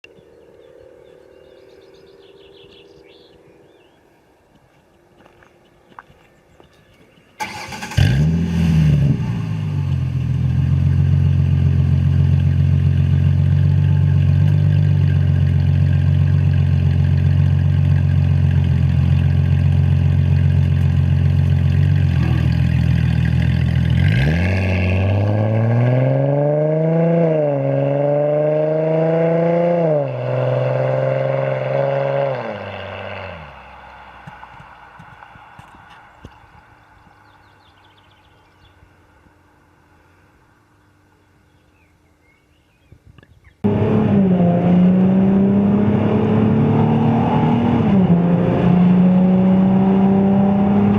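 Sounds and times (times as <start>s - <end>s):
car engine starting and revving: 7.4s - 35.0s, 43.6s - 50.9s.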